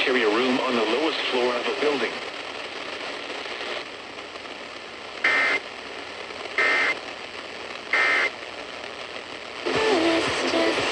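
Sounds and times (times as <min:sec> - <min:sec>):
faint broadcast hiss: 0:00.0 - 0:10.9
music: 0:09.6 - 0:10.9.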